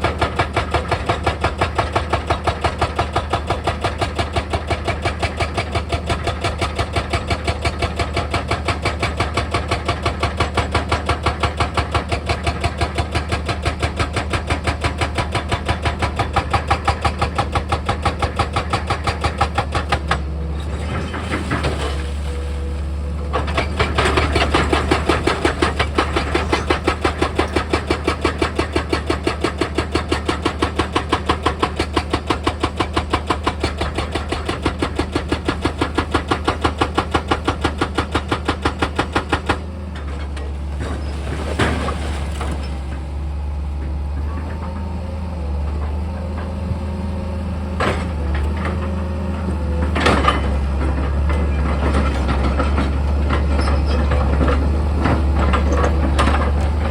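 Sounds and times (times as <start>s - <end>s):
diesel engine running: 40.1s - 56.9s.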